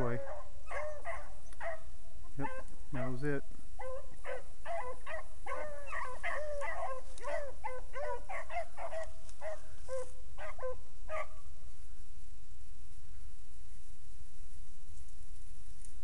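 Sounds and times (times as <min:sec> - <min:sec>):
pack of dogs baying: 0:00.0 - 0:03.2, 0:03.8 - 0:11.4.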